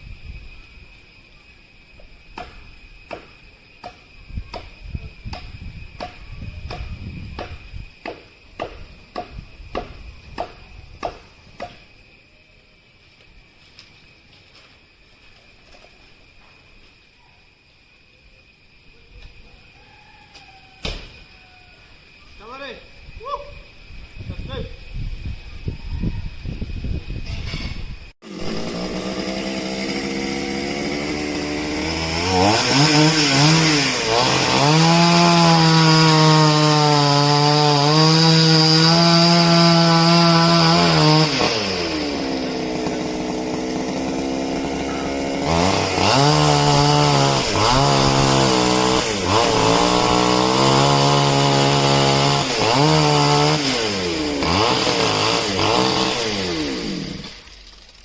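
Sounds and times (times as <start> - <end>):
chainsaw revving and idling: 28.2 - 57.9.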